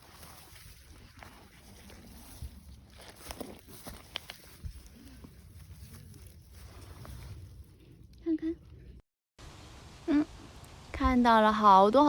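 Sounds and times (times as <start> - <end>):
footsteps on forest litter: 0.0 - 7.6.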